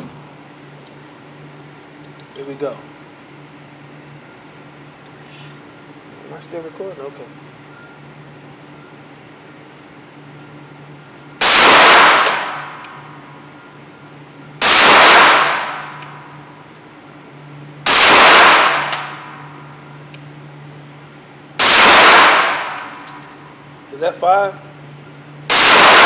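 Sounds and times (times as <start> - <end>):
steady low hum: 0.0 - 26.0
pistol shots ringing: 11.4 - 13.2, 14.6 - 16.4, 17.8 - 19.7, 21.6 - 23.5, 25.5 - 26.0
light clinks: 22.8 - 23.7.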